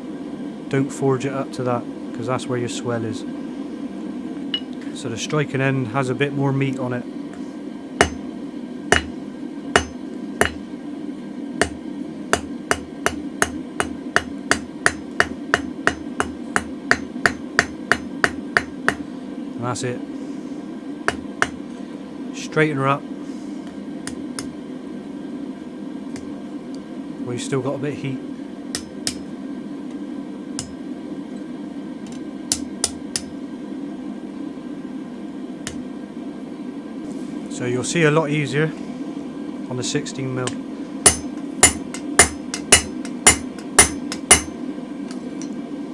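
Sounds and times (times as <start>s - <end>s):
steady hum: 0.0s - 45.9s
hammer striking steel on anvil: 8.0s - 8.2s, 8.9s - 9.1s, 9.8s - 10.6s, 11.6s - 19.0s, 21.1s - 21.6s, 28.7s - 29.2s, 41.0s - 44.6s.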